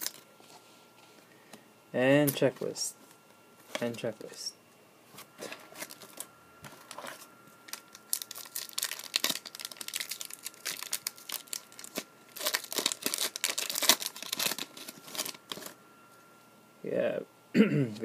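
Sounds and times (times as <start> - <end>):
wrapper tearing and crinkling: 0.0 - 0.2, 5.7 - 6.2, 6.8 - 15.7.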